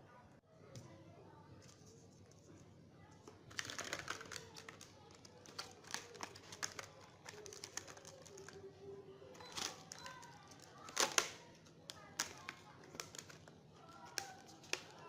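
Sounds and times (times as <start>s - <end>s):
objects clicking and rattling: 3.5s - 8.6s.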